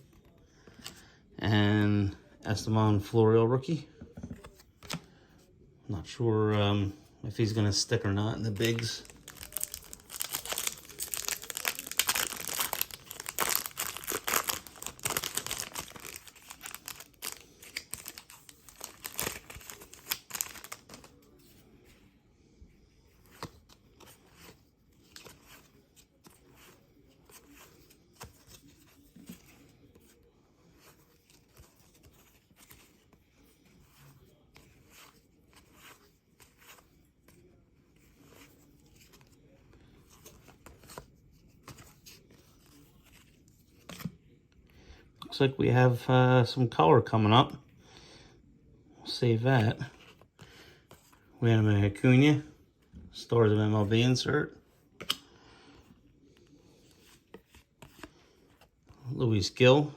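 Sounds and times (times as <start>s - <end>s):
cards clicking and rustling: 4.1s - 5.1s, 7.4s - 22.0s, 23.1s - 44.2s, 55.0s - 55.9s, 56.6s - 59.0s
card pack wrapper tearing: 8.5s - 21.2s.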